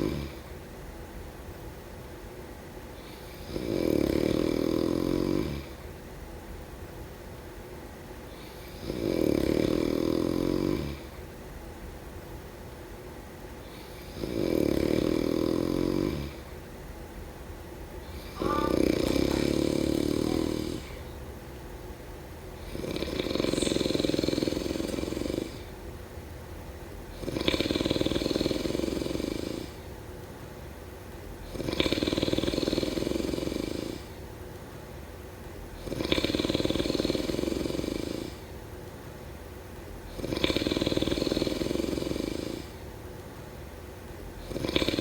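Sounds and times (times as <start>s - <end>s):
person snoring: 18.1s - 21.2s, 22.6s - 25.7s.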